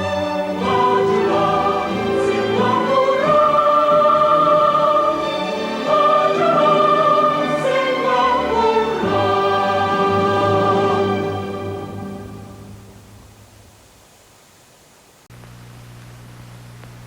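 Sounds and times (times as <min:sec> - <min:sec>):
choir singing: 0:00.0 - 0:13.0
orchestra: 0:00.0 - 0:13.2.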